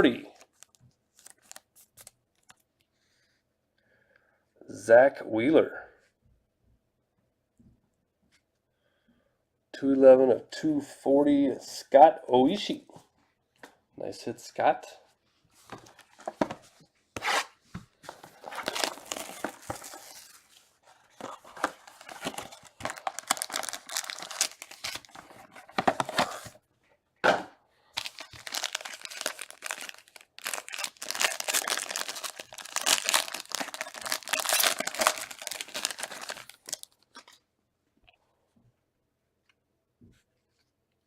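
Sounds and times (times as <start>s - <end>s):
packaging wrapper ripping and rustling: 0.4s - 2.6s, 18.2s - 26.6s, 28.0s - 37.4s.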